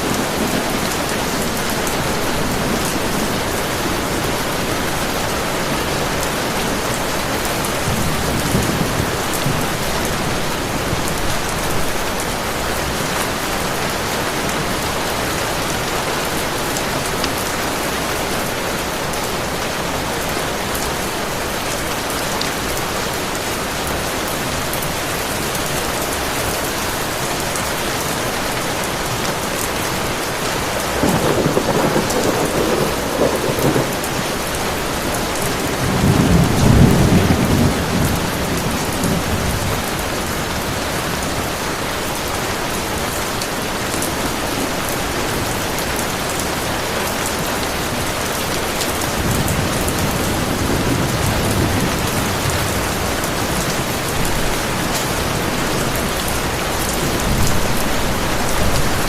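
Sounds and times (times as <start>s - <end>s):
thunder rumbling: 0.0s - 12.8s, 30.8s - 40.7s
heavy rain: 0.0s - 59.0s.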